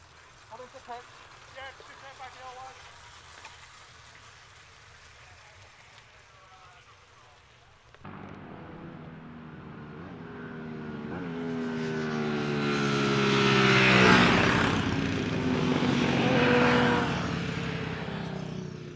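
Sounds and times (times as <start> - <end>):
racing motorcycle passing: 7.8 - 18.9.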